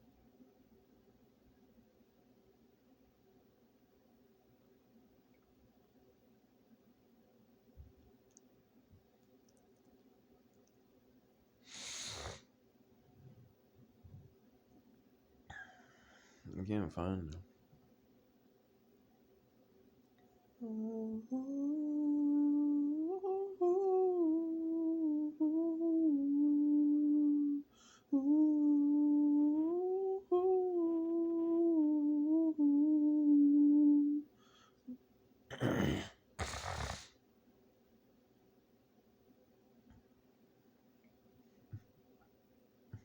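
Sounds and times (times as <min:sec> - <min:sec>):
loud noisy breath bursts: 0:11.6 - 0:12.5, 0:36.4 - 0:37.2
man humming: 0:20.6 - 0:34.3.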